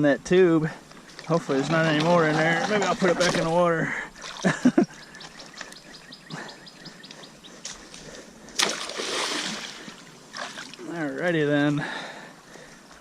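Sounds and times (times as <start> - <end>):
water splashing: 1.1 - 5.7, 8.1 - 11.1
bird chirping: 4.5 - 8.5.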